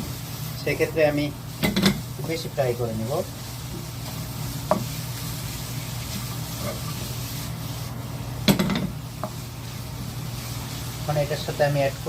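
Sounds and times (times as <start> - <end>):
food sizzling in a frying pan: 0.0 - 12.0.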